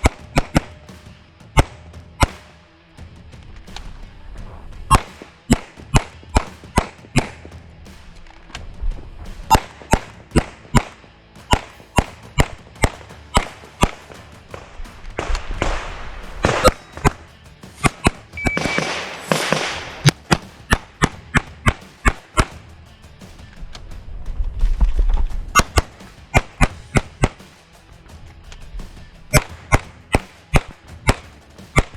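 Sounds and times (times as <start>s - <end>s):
pistol shots: 4.8s - 22.6s.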